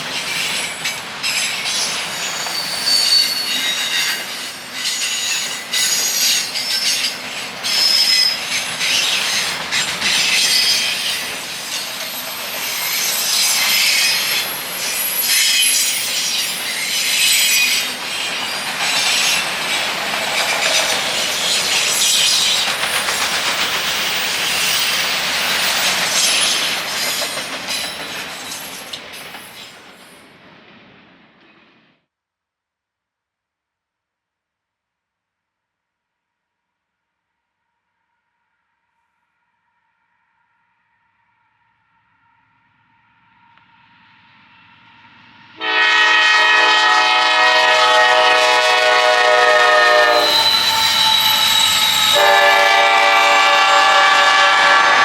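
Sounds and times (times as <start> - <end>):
train rumble: 0.0 - 31.8, 42.8 - 55.0
train wheels squealing: 0.1 - 30.2, 49.2 - 55.0
wheels clicking over rail joints: 17.6 - 29.7.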